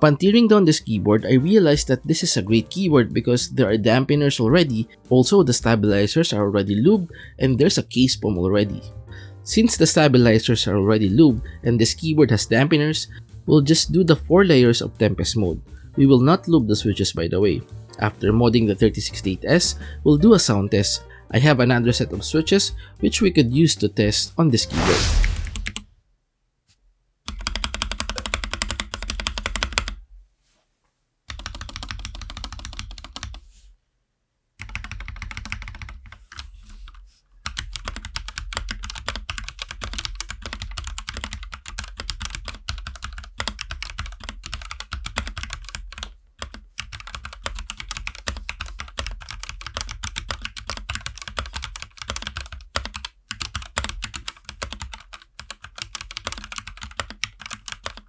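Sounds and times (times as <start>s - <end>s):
mechanical keyboard typing: 27.3s - 30.0s, 31.3s - 33.4s, 34.6s - 58.0s.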